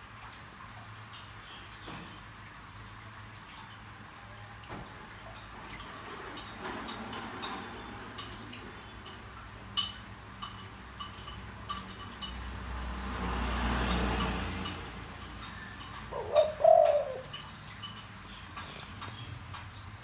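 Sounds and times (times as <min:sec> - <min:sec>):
light clicks and clinks: 0:04.9 - 0:20.0.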